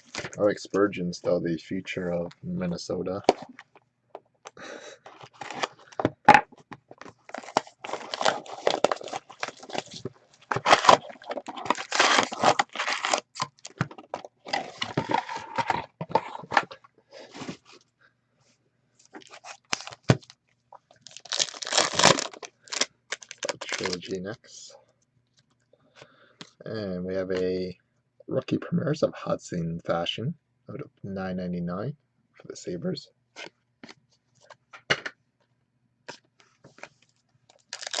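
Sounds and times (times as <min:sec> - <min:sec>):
foil wrapper tearing and crinkling: 0:07.3 - 0:13.8, 0:19.3 - 0:20.2, 0:21.0 - 0:24.1, 0:37.5 - 0:38.0.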